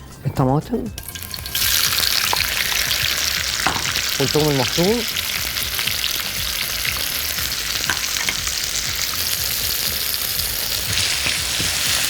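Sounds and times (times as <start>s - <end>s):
food sizzling in hot oil: 1.0s - 12.0s.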